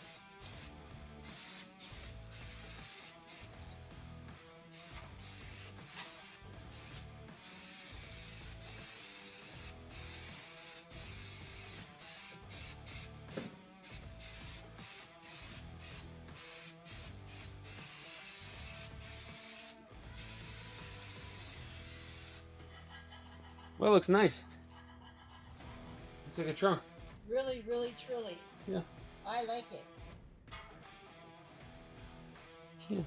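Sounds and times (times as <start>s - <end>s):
aerosol spray can hissing: 0.0s - 3.8s, 4.7s - 22.6s.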